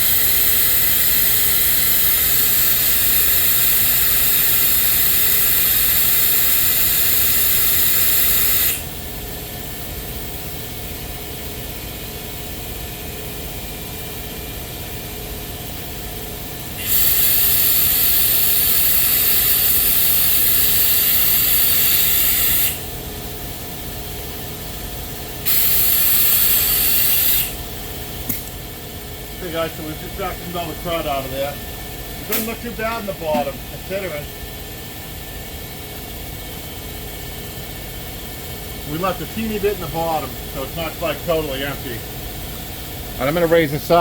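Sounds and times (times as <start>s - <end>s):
air-powered vacuum hissing: 0.0s - 9.3s, 16.7s - 22.9s, 25.4s - 35.4s
steady quiet hum: 0.0s - 44.0s.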